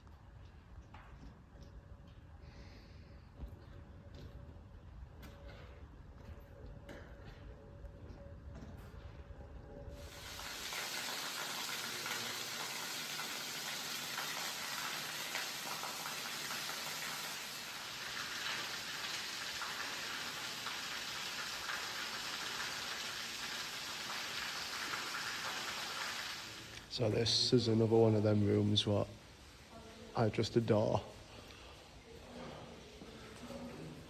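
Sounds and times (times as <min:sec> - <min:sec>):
falling water pattering: 0:10.0 - 0:27.8.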